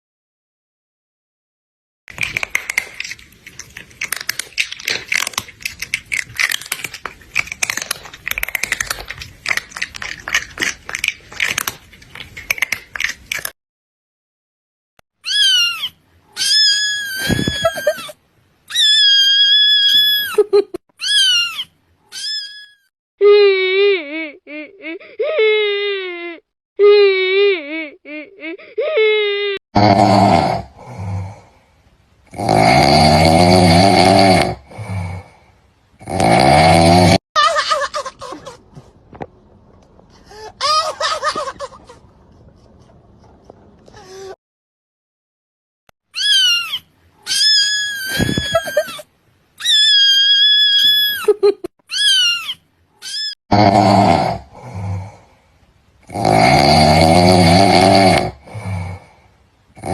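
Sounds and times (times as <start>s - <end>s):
cat wailing cry: 15.2s - 20.4s, 21.0s - 22.9s, 46.1s - 51.3s, 51.9s - 53.4s
breathy sounds: 29.8s - 37.2s, 40.0s - 40.8s, 42.2s - 44.4s, 53.6s - 59.9s
raspy wailing cries: 46.2s - 49.0s.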